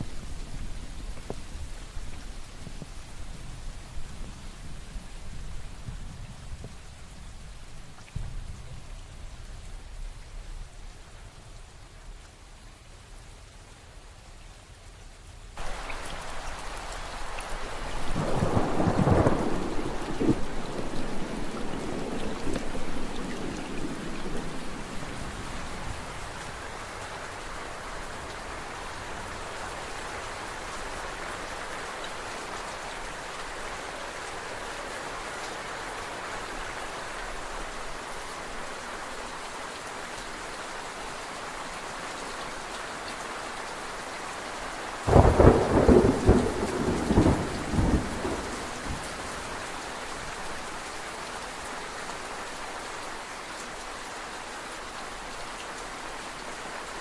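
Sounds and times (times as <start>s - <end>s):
steady rain falling: 0.0s - 57.0s
thunder crack: 18.0s - 26.0s, 45.1s - 49.1s.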